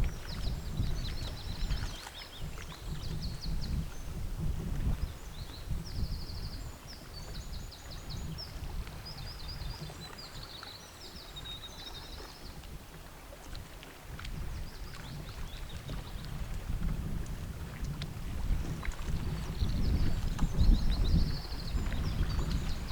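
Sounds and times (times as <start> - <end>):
songbird twittering song: 18.5 - 22.9.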